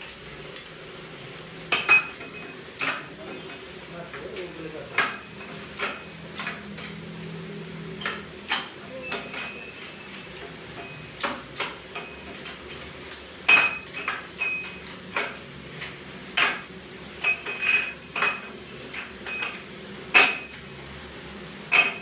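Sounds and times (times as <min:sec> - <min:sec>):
hand tools clinking on steel: 0:01.7 - 0:03.6, 0:13.5 - 0:20.6.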